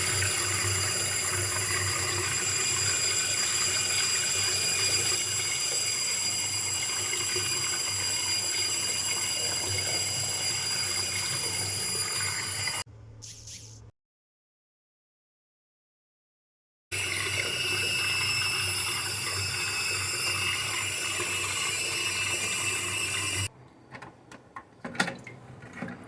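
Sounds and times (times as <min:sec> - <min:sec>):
water hissing in toilet cistern: 0:00.0 - 0:12.8, 0:16.9 - 0:23.5
high-pitched valve squeal: 0:00.0 - 0:13.7, 0:17.0 - 0:23.5.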